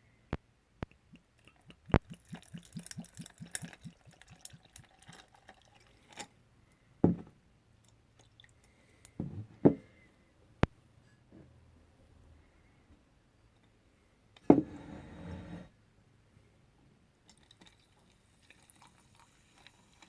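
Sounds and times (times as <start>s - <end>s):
liquid glugging into a glass: 0.8s - 5.9s.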